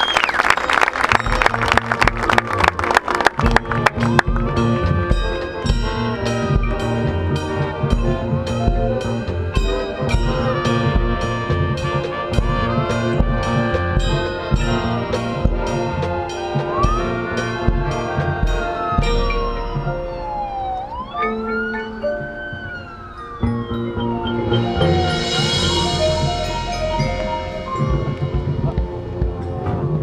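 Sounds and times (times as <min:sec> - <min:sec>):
brass playing sustained chords: 0:01.1 - 0:30.0
drum-line strokes: 0:01.4 - 0:22.6, 0:23.4 - 0:29.9
siren-like wail: 0:15.6 - 0:27.8.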